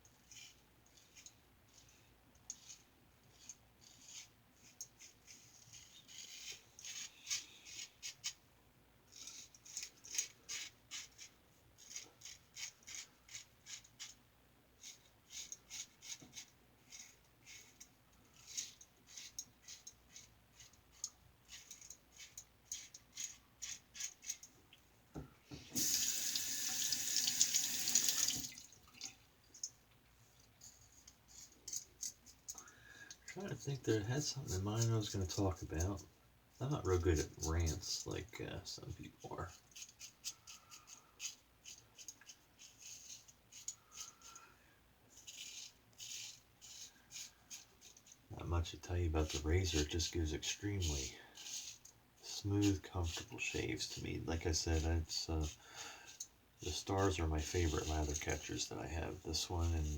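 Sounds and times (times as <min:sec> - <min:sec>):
water tap running: 0:25.8 - 0:29.1
razor scraping stubble: 0:54.5 - 0:59.9.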